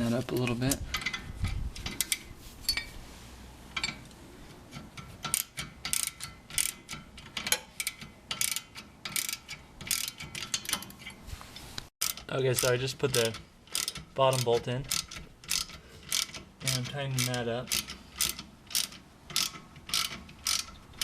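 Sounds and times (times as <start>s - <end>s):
ratchet wrench clicking: 5.2s - 11.0s, 12.0s - 21.0s.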